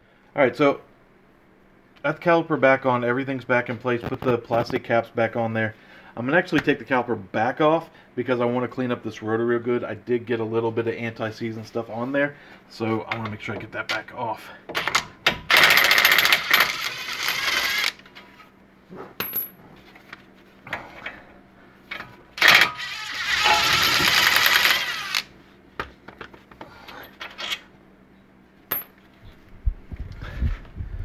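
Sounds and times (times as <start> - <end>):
impact wrench rattling: 15.4 - 18.0, 22.4 - 25.3.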